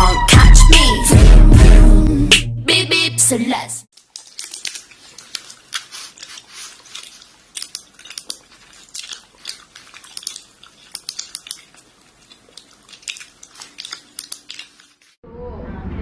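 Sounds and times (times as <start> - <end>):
crisp crunching and crackling: 3.9 - 15.2.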